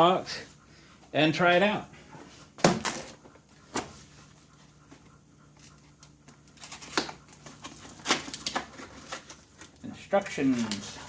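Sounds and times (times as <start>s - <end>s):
faint steady hum: 0.0s - 11.0s
packaging rustling: 6.4s - 11.0s.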